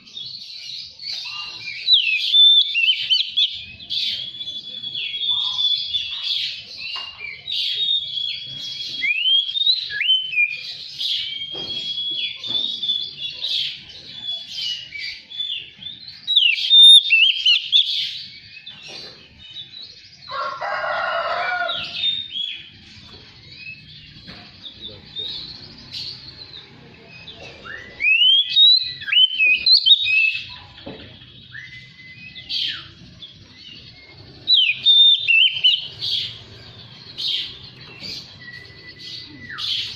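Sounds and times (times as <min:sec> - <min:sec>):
bird singing whistled phrases: 0:01.2 - 0:06.6, 0:07.3 - 0:18.7, 0:27.0 - 0:30.7, 0:31.4 - 0:36.4, 0:37.2 - 0:39.9
harsh bird call: 0:33.8 - 0:39.9.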